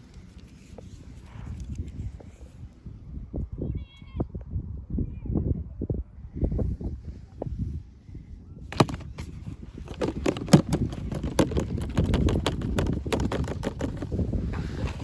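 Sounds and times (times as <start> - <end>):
plastic clicks and crackles: 8.7 - 14.2
packaging knocks and rustling: 8.7 - 15.0.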